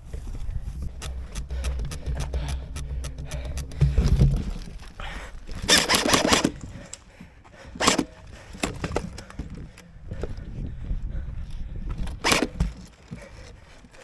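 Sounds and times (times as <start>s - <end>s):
low thumps of movement: 0.0s - 13.3s
airsoft gun full-auto burst: 5.7s - 6.5s, 7.8s - 8.1s.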